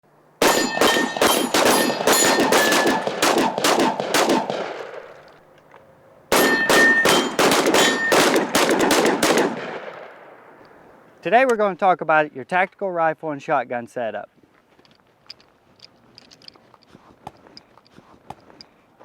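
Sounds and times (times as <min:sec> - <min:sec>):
steel targets clanging: 0:00.4 - 0:03.3, 0:06.3 - 0:08.4
rapid gunshots: 0:00.4 - 0:05.2, 0:06.3 - 0:10.0.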